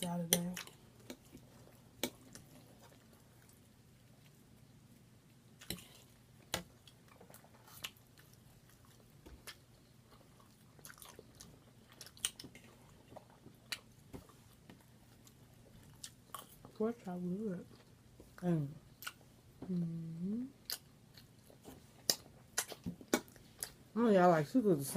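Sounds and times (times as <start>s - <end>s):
faint low hum: 0.0s - 24.9s
chewing and mouth smacking: 5.6s - 16.8s, 18.9s - 19.3s, 20.6s - 23.8s.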